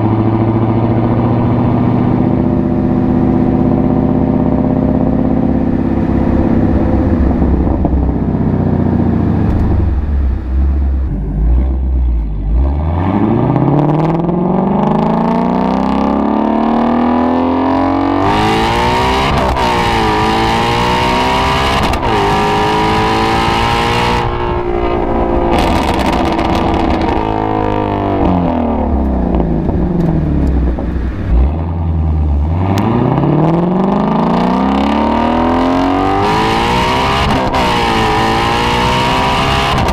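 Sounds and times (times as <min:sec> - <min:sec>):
car engine revving hard: 0:00.0 - 0:39.9.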